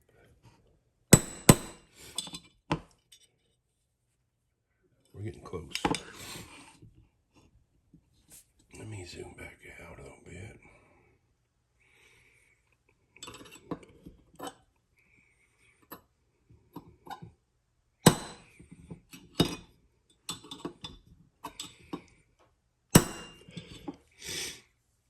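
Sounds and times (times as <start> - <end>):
hammer striking pin punch: 1.2 - 1.8, 18.0 - 18.5, 23.0 - 23.5
tools and parts clicking: 20.3 - 22.1.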